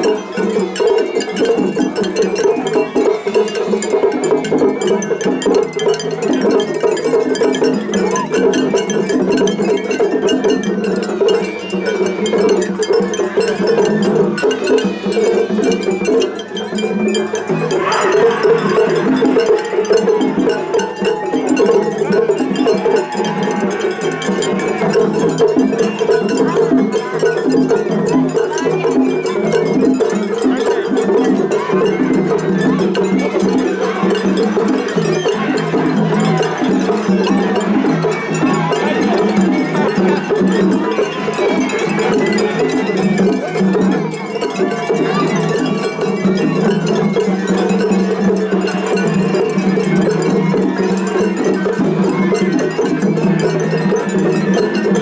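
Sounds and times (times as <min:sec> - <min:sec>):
taiko drums: 0:00.1 - 0:55.0
bamboo flutes: 0:17.3 - 0:25.1.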